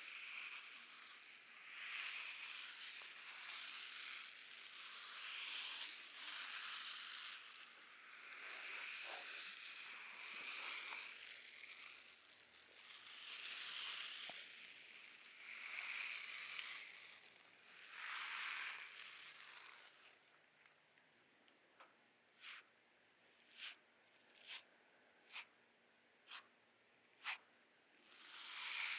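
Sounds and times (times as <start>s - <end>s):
brush scratching across skin: 3.0s - 12.4s, 23.5s - 24.7s, 27.2s - 27.4s.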